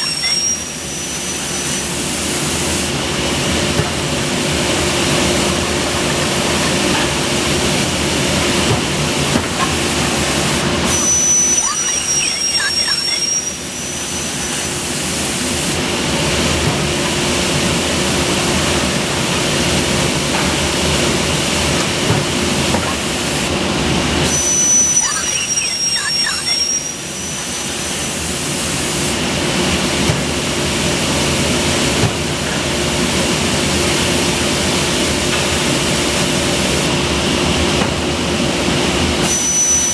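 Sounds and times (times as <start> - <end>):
saw blade whining through metal: 0.0 - 1.9.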